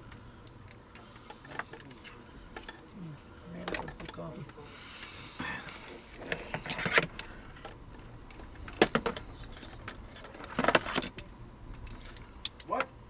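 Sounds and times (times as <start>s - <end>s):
train car rumble: 0.0s - 13.0s
sharp clicks and rattles: 6.2s - 12.9s.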